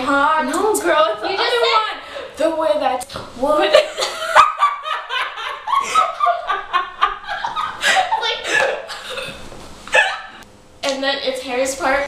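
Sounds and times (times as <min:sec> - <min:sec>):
young people laughing: 0:03.6 - 0:09.0.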